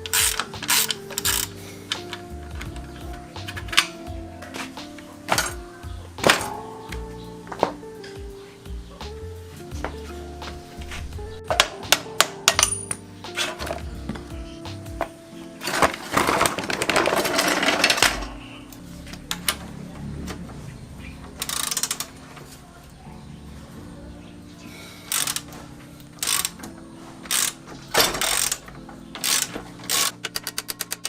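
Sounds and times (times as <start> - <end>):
hand tools rapid clicking: 0.0 - 4.0, 21.4 - 22.2, 25.1 - 25.6, 26.2 - 31.0
metallic clinks: 11.5 - 13.8.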